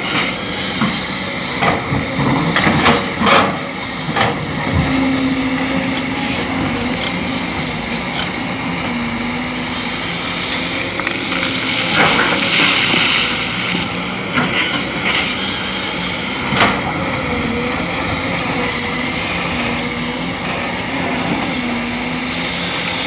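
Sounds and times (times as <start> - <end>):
excavator diesel engine running: 0.0 - 23.0
harsh high-pitched squeal: 15.0 - 17.8.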